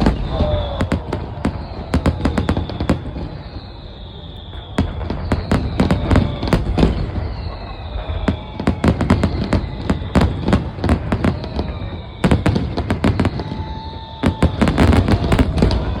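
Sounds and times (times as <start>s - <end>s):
falling firework whistles: 0.0s - 16.0s
fireworks bangs and crackles: 0.0s - 16.0s.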